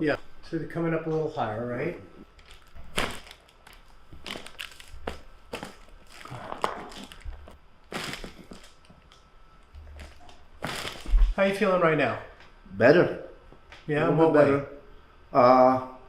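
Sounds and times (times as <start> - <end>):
crunchy rustling and handling: 2.2 - 11.7.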